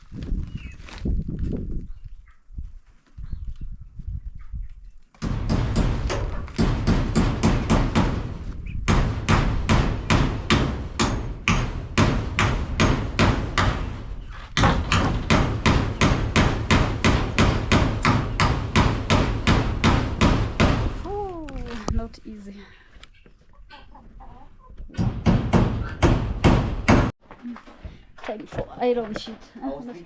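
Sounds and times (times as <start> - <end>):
hammer blows: 5.2 - 21.0, 24.9 - 27.1.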